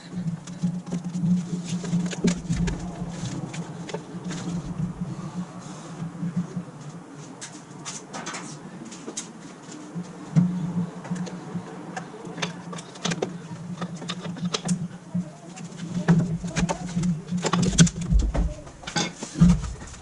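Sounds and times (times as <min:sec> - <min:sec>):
heavy thuds: 0:00.0 - 0:05.3, 0:16.0 - 0:20.0
steady low hum: 0:00.0 - 0:20.0.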